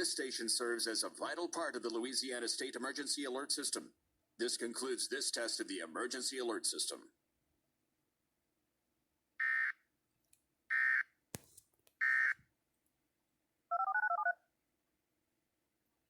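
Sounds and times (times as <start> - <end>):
click: 10.2 - 10.4.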